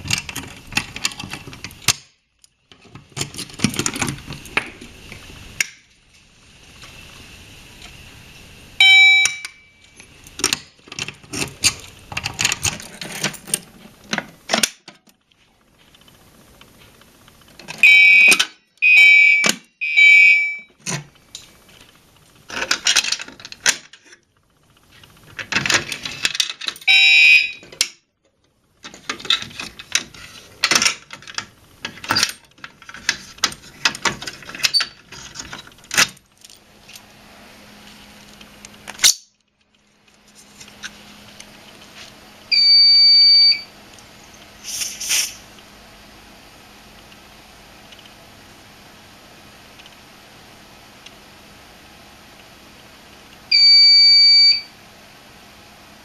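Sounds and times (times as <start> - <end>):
fire alarm horn blasts: 8.8 - 9.9, 17.8 - 20.7, 26.9 - 27.6, 42.5 - 43.7, 53.5 - 54.7.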